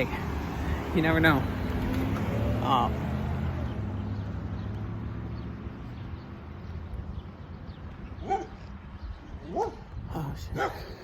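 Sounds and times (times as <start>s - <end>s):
vehicle engine humming: 0.0s - 11.0s
dog barking: 8.2s - 8.6s, 9.5s - 9.9s, 10.6s - 10.9s.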